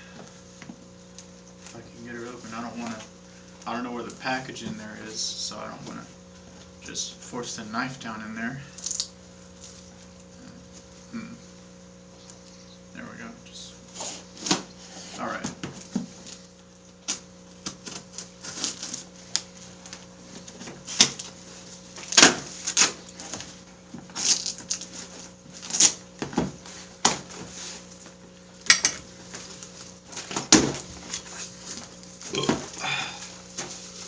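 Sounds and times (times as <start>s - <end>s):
faint electrical hum: 0.0s - 34.0s
packaging crinkling and rustling: 16.2s - 28.3s.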